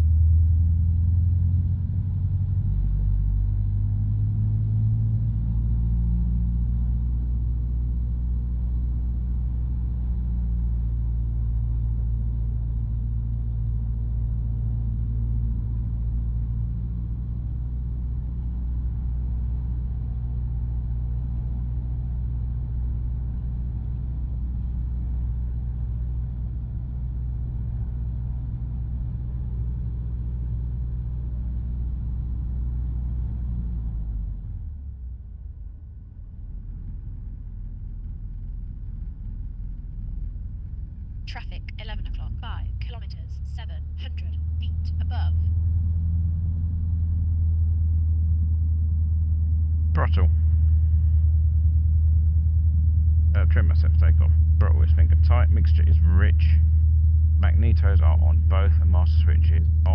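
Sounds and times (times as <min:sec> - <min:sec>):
propeller aircraft engine droning: 0:00.0 - 0:59.9.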